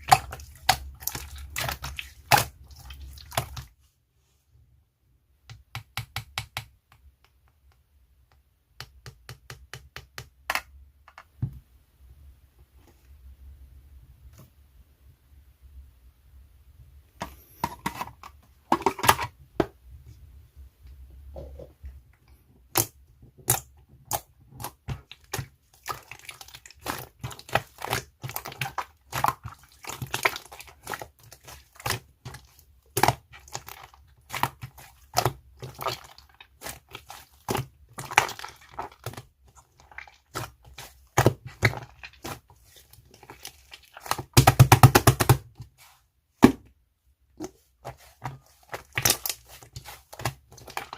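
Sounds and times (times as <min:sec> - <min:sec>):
slime popping and crackling: 0:22.7 - 0:45.4, 0:47.9 - 0:50.9.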